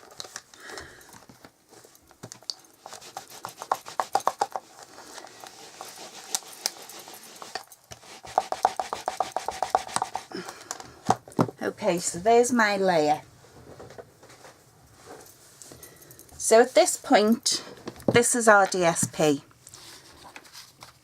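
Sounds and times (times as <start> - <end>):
rapid scraping on cardstock: 2.8 - 10.3.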